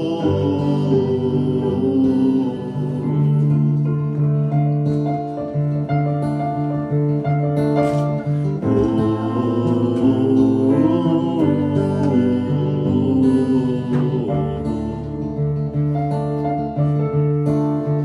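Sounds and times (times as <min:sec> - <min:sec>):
person singing: 0:00.0 - 0:04.8, 0:08.5 - 0:15.4
solo piano accompaniment: 0:00.0 - 0:18.0.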